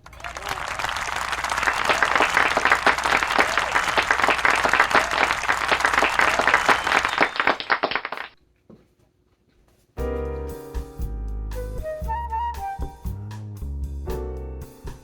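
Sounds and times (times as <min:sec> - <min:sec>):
hands clapping: 0:00.0 - 0:08.4.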